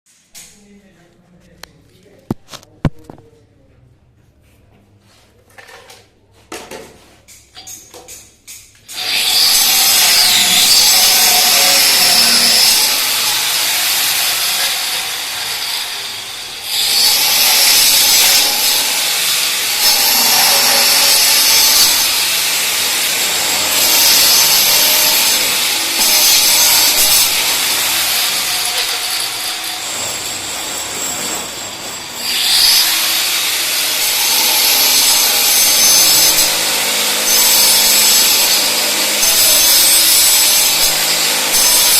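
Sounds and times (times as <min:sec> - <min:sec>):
saw cutting: 0:08.9 - 0:41.9.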